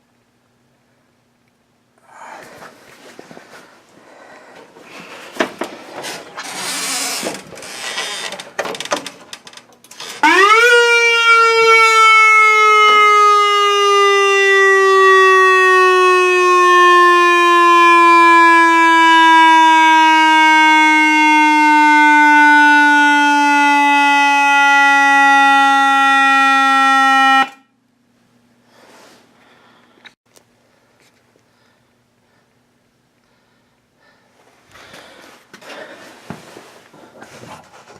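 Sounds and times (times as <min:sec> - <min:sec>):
rustling: 0:02.2 - 0:09.6, 0:34.4 - 0:37.9
buzzy siren tone: 0:10.0 - 0:27.7.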